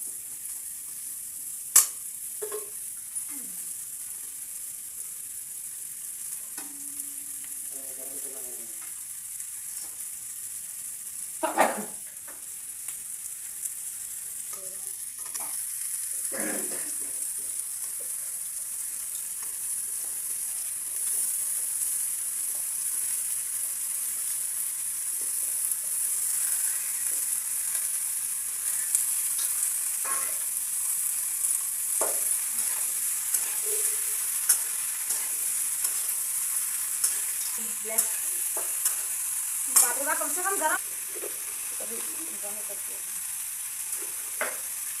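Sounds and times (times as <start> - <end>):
vegetables sizzling in hot oil: 0.0 - 45.0
spatula scraping a pan: 28.6 - 30.5, 31.9 - 39.2.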